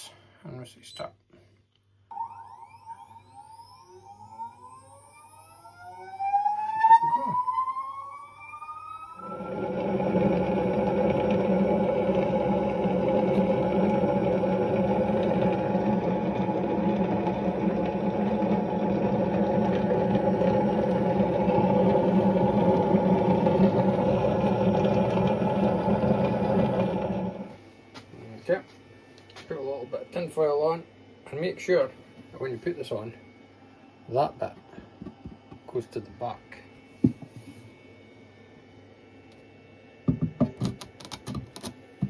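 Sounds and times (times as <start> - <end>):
motor whining and humming: 2.1 - 27.6.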